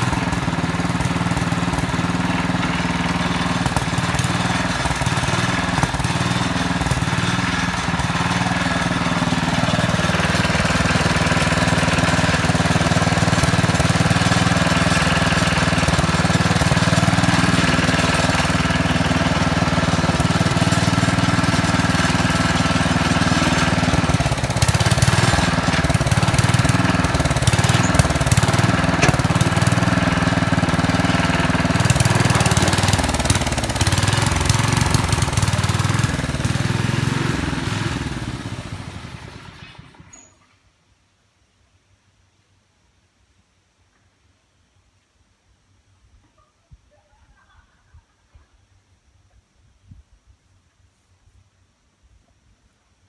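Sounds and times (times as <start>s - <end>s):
tractor engine running: 0.0s - 40.3s.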